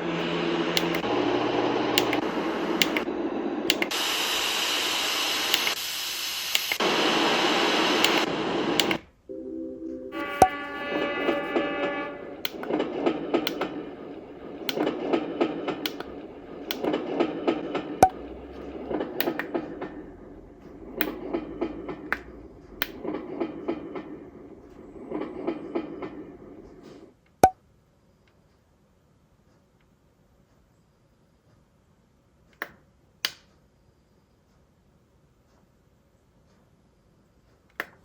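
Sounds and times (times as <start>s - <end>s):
train wheels clickety-clack: 0.0s - 4.0s, 11.0s - 27.1s
switch click: 0.2s - 1.1s, 1.9s - 3.1s, 3.7s - 4.0s, 5.5s - 5.8s, 6.5s - 6.9s, 8.0s - 9.1s.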